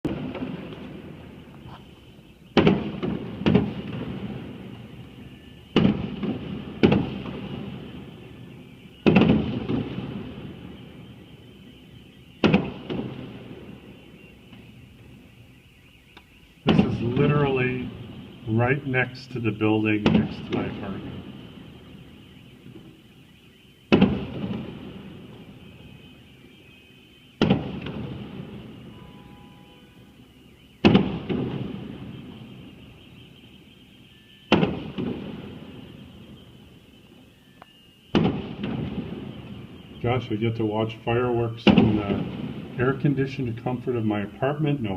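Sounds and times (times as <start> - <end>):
fireworks bangs with echoing rumble: 0.0 - 15.9, 16.6 - 37.3, 38.0 - 44.9.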